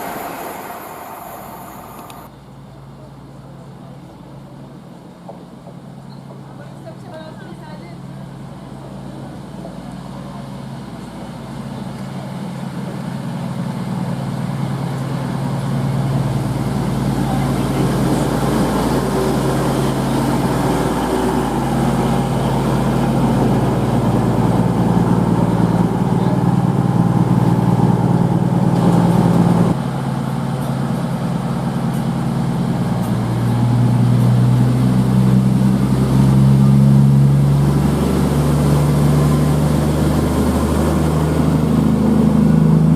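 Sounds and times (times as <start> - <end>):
low motor hum: 0.0 - 2.3, 17.1 - 29.8
train passing through station: 0.0 - 42.9.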